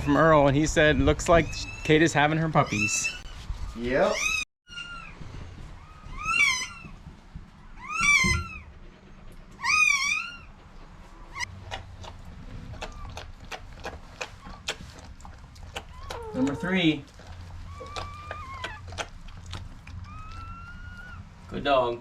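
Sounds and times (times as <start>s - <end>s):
puppies squealing: 0.0s - 7.0s, 7.6s - 11.5s, 15.8s - 21.8s.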